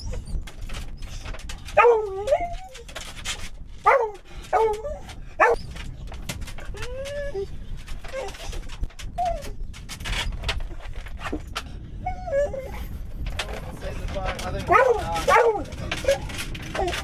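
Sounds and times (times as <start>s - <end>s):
dog whining: 0.0s - 3.0s, 3.8s - 5.8s, 6.6s - 10.8s, 12.0s - 13.0s, 14.7s - 17.0s.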